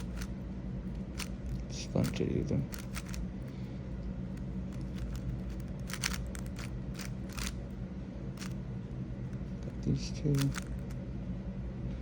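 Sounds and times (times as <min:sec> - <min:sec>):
puzzle cube plastic clicks: 0:00.0 - 0:00.3, 0:01.1 - 0:03.2, 0:04.7 - 0:07.6, 0:10.4 - 0:11.0.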